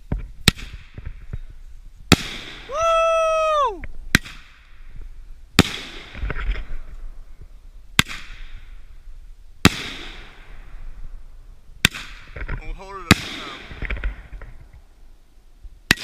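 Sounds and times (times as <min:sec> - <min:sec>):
fireworks crackle: 0:03.6 - 0:15.2.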